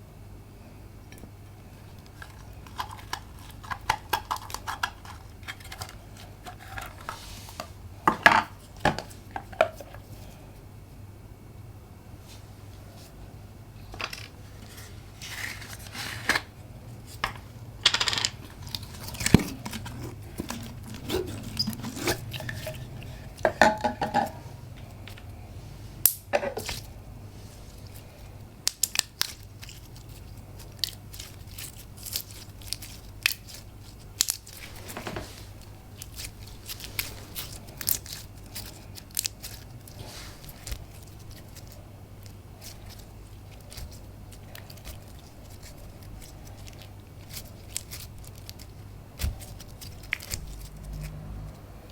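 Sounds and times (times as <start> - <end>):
faint low hum: 0.0 - 51.9
squelchy slime squeaks: 18.9 - 23.2.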